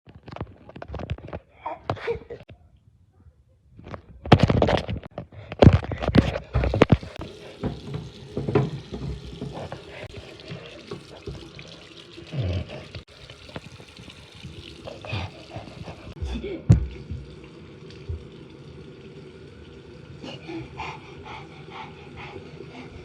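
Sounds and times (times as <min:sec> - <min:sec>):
tap water running: 0:05.6 - 0:23.0
water splashing: 0:06.3 - 0:23.0.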